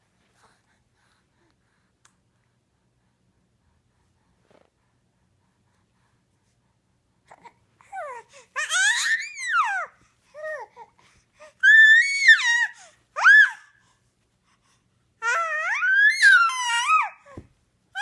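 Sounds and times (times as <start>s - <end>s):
baby squealing and cooing: 7.9s - 10.6s, 11.6s - 13.7s, 15.2s - 17.4s.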